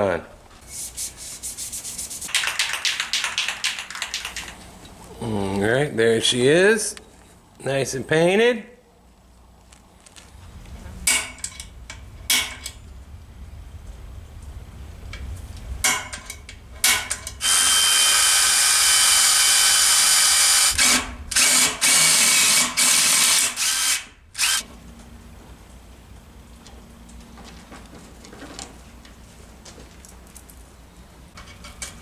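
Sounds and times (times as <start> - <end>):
power drill running: 17.4 - 24.7.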